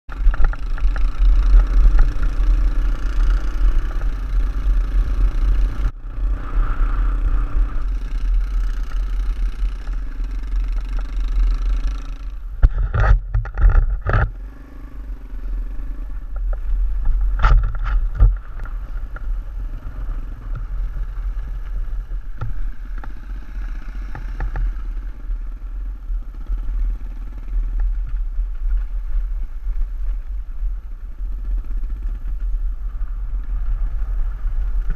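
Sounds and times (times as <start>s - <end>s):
motorcycle engine running: 0.0s - 34.9s
wind rumble on microphone: 0.1s - 34.9s.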